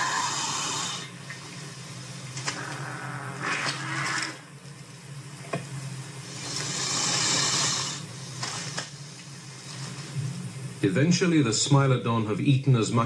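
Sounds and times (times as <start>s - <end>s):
animal hissing: 0.0s - 1.1s, 2.5s - 4.5s, 6.2s - 9.2s.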